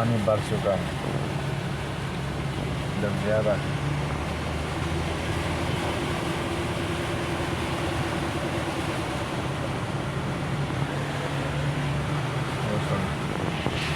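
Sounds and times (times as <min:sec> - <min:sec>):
cars driving on flooded road: 0:00.0 - 0:13.9.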